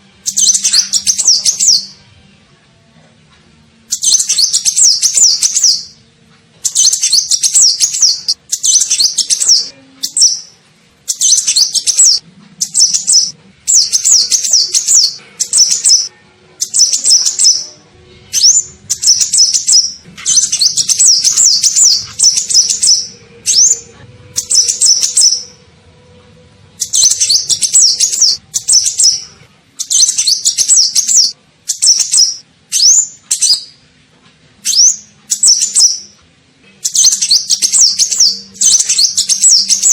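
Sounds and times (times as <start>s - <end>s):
sunbird twittering song: 3.9s - 6.0s, 6.6s - 10.5s, 18.4s - 23.8s.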